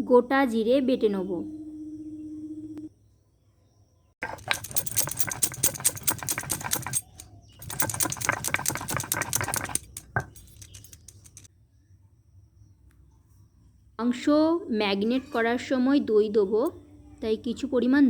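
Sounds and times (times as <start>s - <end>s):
mixer grinder grinding seeds: 4.2s - 11.5s
scattered clicks: 4.2s - 11.5s.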